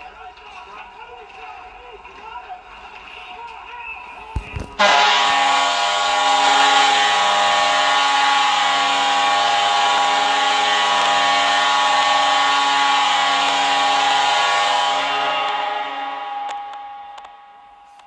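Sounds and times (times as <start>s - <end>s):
arena goal horn: 4.4s - 18.0s.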